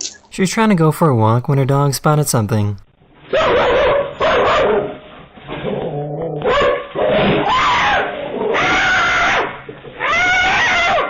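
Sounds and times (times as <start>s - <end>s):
dog barking and yelping: 3.2s - 5.1s, 6.4s - 9.6s.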